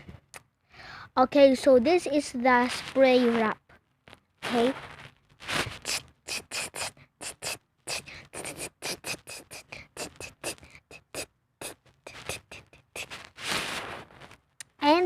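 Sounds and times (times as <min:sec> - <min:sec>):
short hissing spray strokes: 0:05.5 - 0:14.1.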